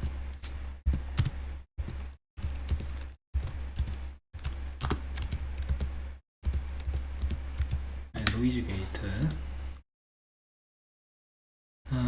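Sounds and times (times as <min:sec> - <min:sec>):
keyboard and mouse clicks: 0:00.0 - 0:08.4
steady low hum: 0:00.0 - 0:09.8.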